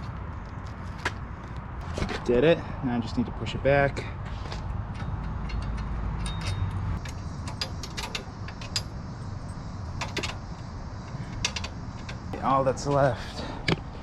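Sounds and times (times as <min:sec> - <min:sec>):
metallic clinks and rattles of tools: 0:04.0 - 0:10.5.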